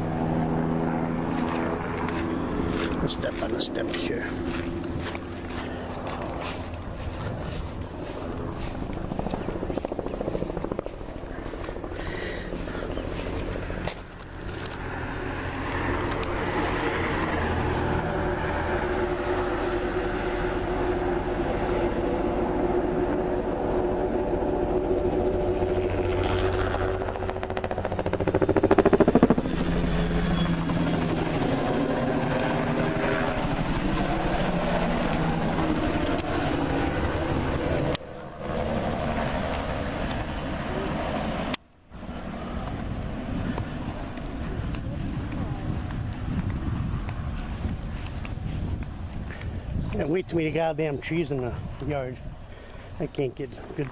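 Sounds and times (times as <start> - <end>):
helicopter flying over: 0.0 - 53.9.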